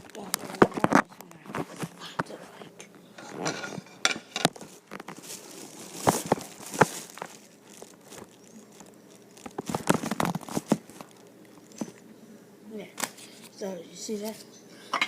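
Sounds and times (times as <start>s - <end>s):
dishes and utensils clicking: 3.2s - 4.6s.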